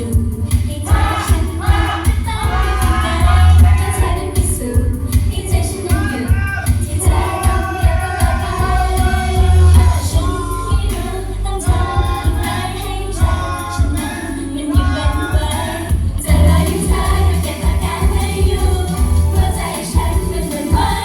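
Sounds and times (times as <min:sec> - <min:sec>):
heavy bass beat: 0:00.0 - 0:21.0
women singing pop song: 0:00.0 - 0:21.0.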